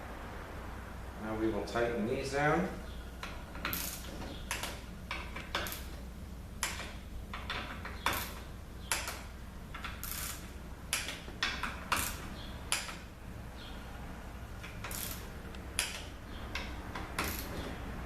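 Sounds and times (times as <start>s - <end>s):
ratchet tool clicking: 6.6s - 13.0s, 14.6s - 17.6s.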